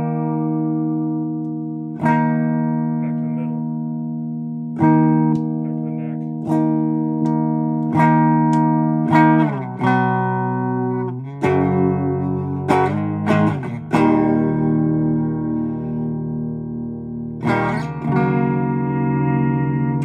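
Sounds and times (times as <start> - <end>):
electric guitar chords ringing out: 0.0 - 20.0.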